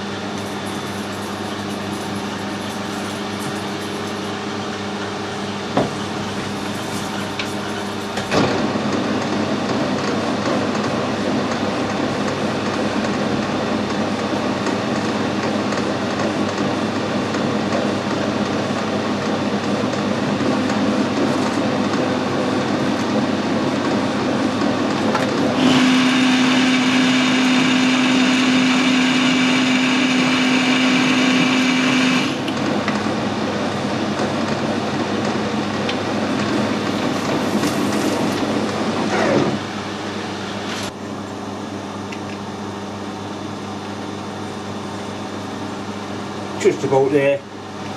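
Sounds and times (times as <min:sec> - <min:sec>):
metal lathe running: 0:00.0 - 0:09.6, 0:18.2 - 0:40.9
hiss of lathe cutting: 0:25.6 - 0:32.4.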